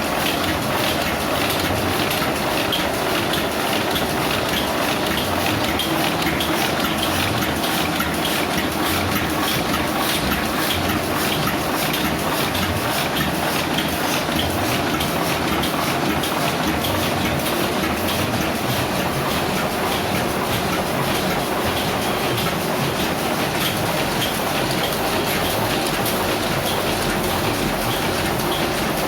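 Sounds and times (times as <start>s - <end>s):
printing press clattering: 0.0s - 29.0s.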